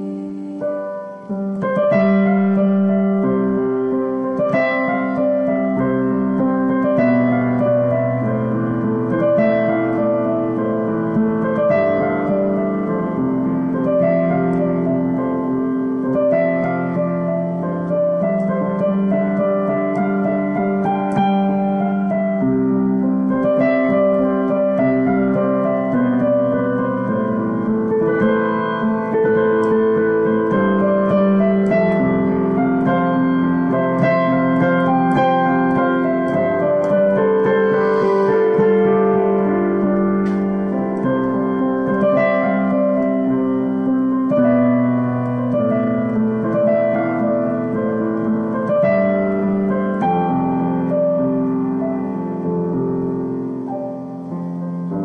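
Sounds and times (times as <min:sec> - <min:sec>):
slow piano chords: 0:00.0 - 0:55.0.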